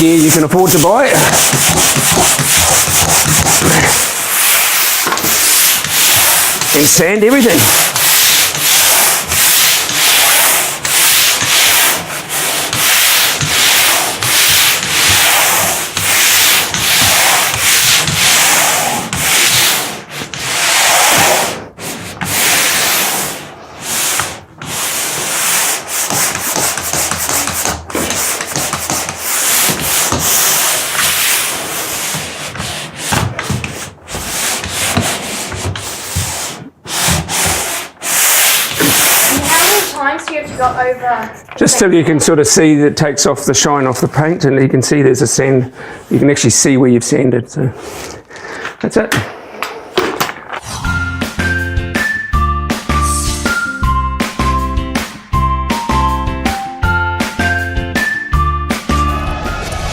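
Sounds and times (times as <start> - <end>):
sandpaper rasping on wall: 0.0 - 40.9.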